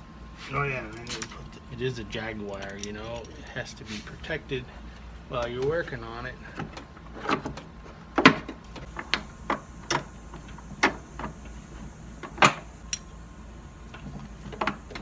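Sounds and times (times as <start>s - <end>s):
metal parts clicking and knocking: 2.5s - 3.5s.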